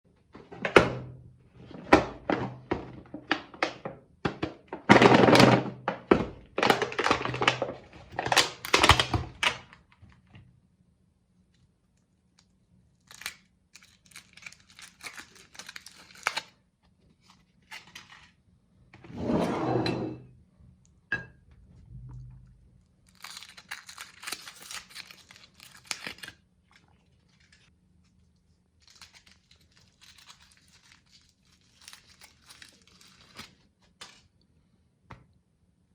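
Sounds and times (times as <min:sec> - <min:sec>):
meat grinder crunching chocolate: 0:02.8 - 0:09.4, 0:23.1 - 0:26.9
wrappers crinkling: 0:13.0 - 0:16.6, 0:23.0 - 0:34.3.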